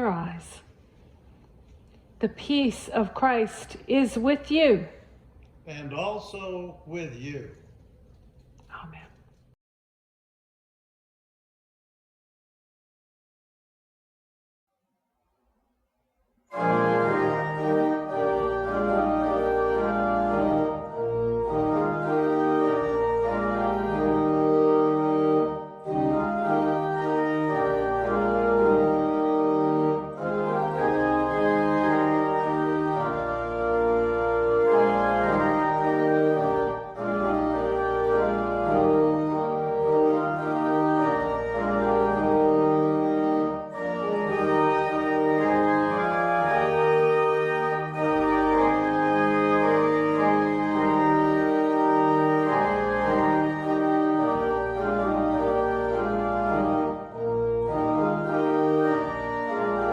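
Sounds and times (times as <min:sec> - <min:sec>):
organ playing sustained chords: 0:16.5 - 0:59.9.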